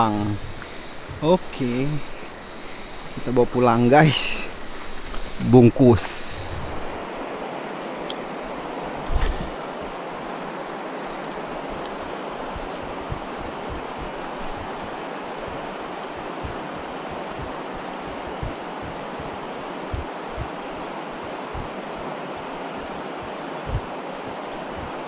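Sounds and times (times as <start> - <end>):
high insect drone: 0.0 - 25.0
river water rushing: 6.5 - 25.0
low thumps: 12.5 - 20.6.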